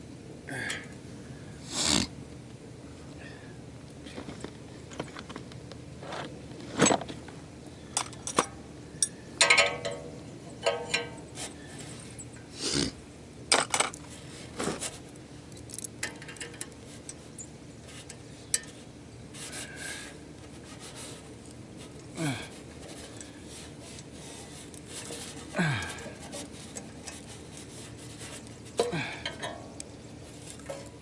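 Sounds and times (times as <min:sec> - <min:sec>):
steady low hum: 0:00.0 - 0:31.0
metallic clinks and rattles: 0:15.5 - 0:18.8.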